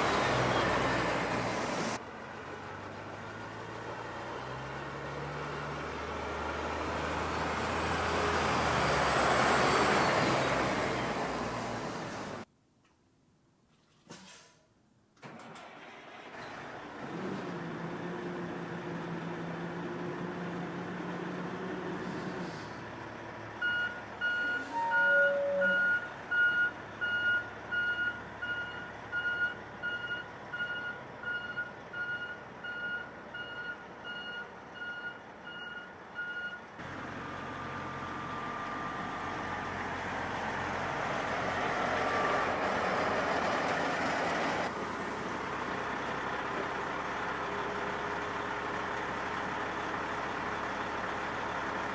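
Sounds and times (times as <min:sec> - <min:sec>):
diesel truck engine: 0:00.0 - 0:12.5, 0:15.2 - 0:51.9
reversing alarm beeping: 0:23.6 - 0:36.6.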